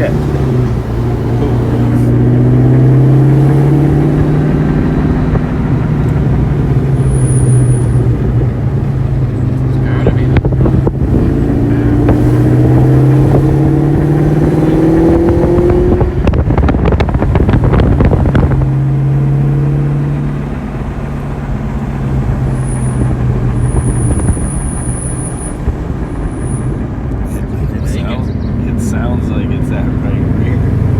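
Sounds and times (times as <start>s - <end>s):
car engine accelerating: 0.0s - 30.9s
brake squeak: 6.9s - 8.2s, 22.6s - 25.6s.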